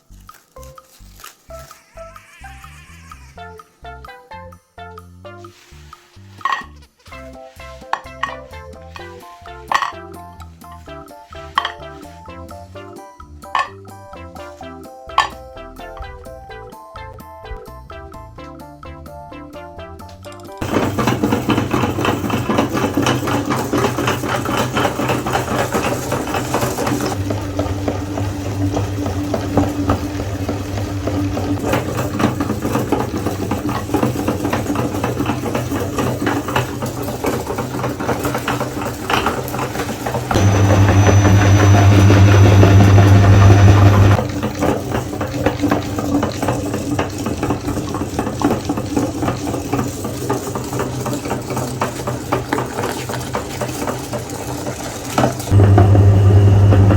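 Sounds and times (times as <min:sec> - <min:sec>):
cookies crunching in grinder: 0:00.0 - 0:03.4, 0:20.6 - 0:56.9
meat grinder motor hum: 0:20.6 - 0:56.9.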